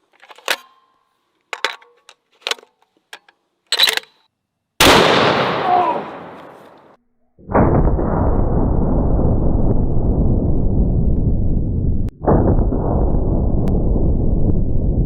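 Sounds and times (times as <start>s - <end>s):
rifle shot with echo: 4.8s - 6.9s.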